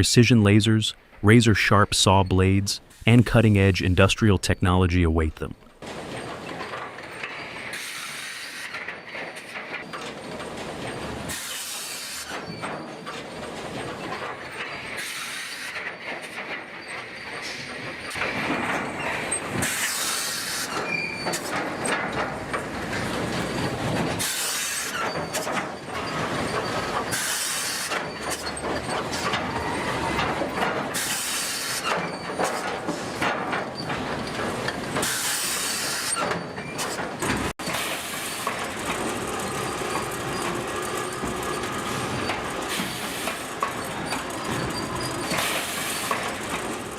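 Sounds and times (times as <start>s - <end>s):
heavy machinery running: 37.1s - 46.9s.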